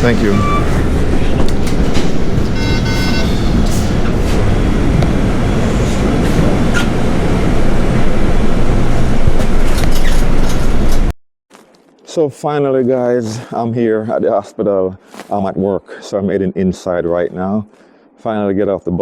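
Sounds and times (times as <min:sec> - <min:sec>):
electronic tone: 0:00.0 - 0:01.5, 0:02.4 - 0:04.1
rattles and clicks: 0:00.0 - 0:05.2
bus engine and road rumble: 0:00.0 - 0:11.1.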